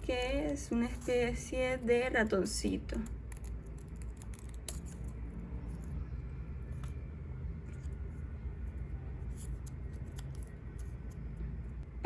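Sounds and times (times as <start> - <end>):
low background hum: 0.0 - 12.0
scissors snipping paper: 9.4 - 11.2.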